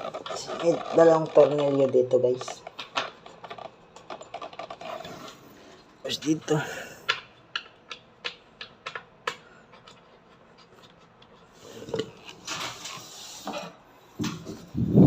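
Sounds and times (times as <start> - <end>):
rubbing and scraping: 0.0 - 5.9, 9.7 - 13.8.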